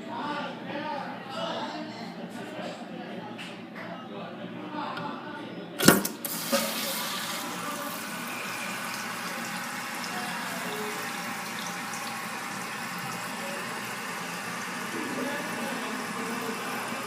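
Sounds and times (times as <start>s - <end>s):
toilet flush mechanism clack: 5.8s - 17.0s
water rushing through toilet tank: 5.8s - 17.0s.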